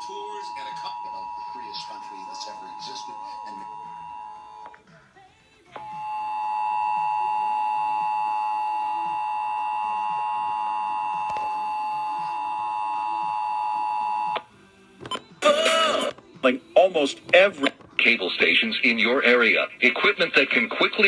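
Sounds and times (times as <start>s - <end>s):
two-tone alert signal: 0.0s - 4.7s.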